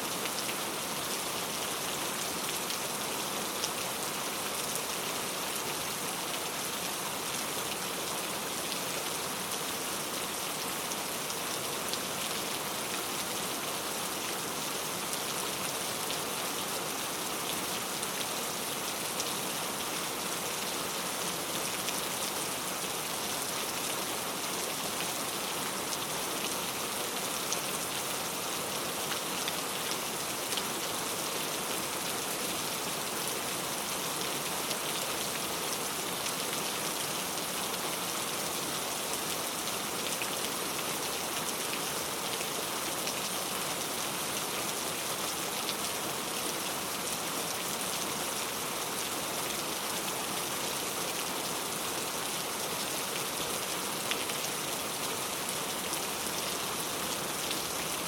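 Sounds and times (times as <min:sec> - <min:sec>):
heavy rain on a hard surface: 0:00.0 - 0:58.0.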